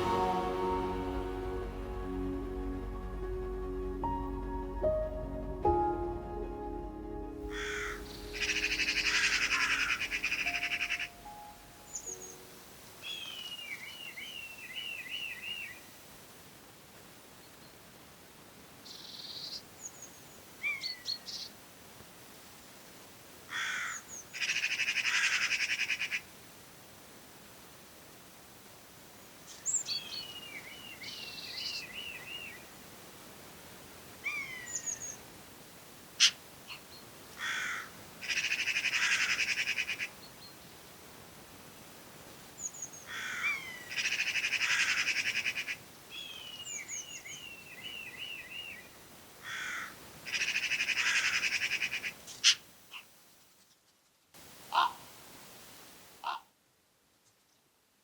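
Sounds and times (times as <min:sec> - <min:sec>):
harsh rasping bird calls: 0:07.5 - 0:11.2, 0:23.5 - 0:26.2, 0:37.4 - 0:40.1, 0:42.8 - 0:47.2, 0:49.4 - 0:53.1, 0:54.7 - 0:55.0, 0:56.2 - 0:56.5.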